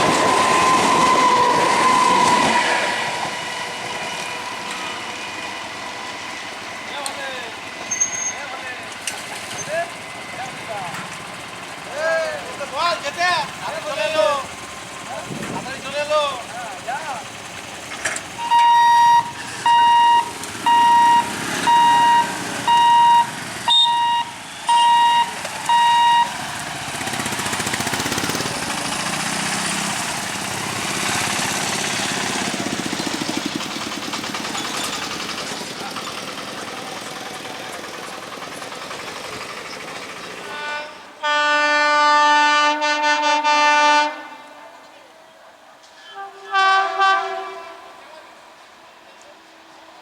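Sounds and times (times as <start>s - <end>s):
train rumbling over rails: 0.0s - 50.0s
train horn: 0.3s - 5.7s, 18.4s - 19.9s, 40.4s - 44.8s, 46.0s - 48.4s
high beeps: 18.4s - 26.4s.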